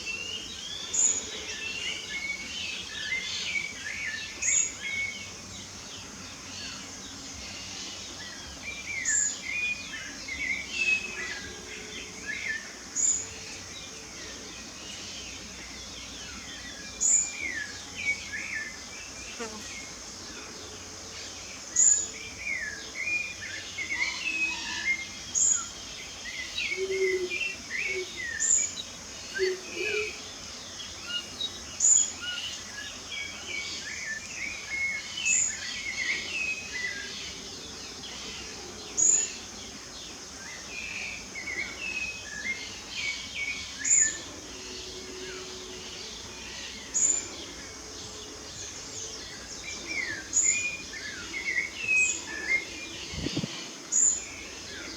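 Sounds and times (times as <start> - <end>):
high insect drone: 0.0 - 54.9
birds singing and chirping: 31.2 - 54.9.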